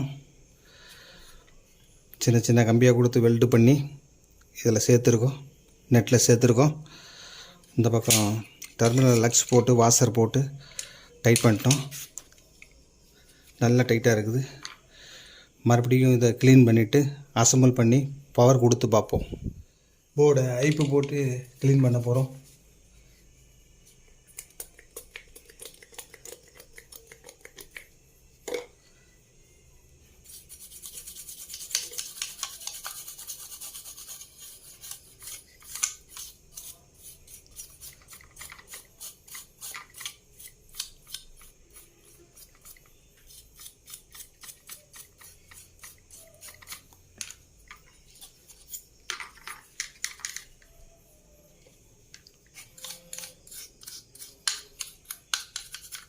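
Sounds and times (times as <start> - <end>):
brush scrubbing circuit board: 30.2 - 46.9.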